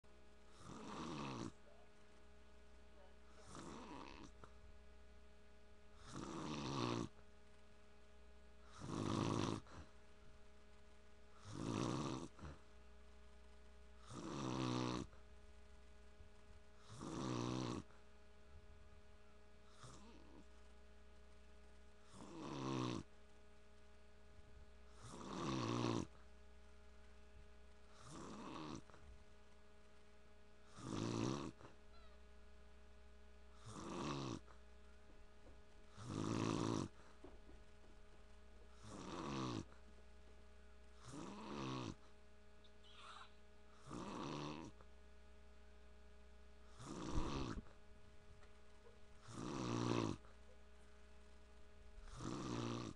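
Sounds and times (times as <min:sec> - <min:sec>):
man snoring: 0:00.6 - 0:01.5, 0:03.4 - 0:04.3, 0:06.0 - 0:07.1, 0:08.7 - 0:09.8, 0:11.4 - 0:12.4, 0:14.0 - 0:15.1, 0:16.8 - 0:17.9, 0:22.1 - 0:23.1, 0:25.0 - 0:26.1, 0:28.0 - 0:28.8, 0:30.8 - 0:31.6, 0:33.6 - 0:34.4, 0:36.0 - 0:36.9, 0:38.8 - 0:39.7, 0:41.0 - 0:42.0, 0:43.8 - 0:44.8, 0:46.7 - 0:47.6, 0:49.2 - 0:50.2, 0:52.1 - 0:52.9.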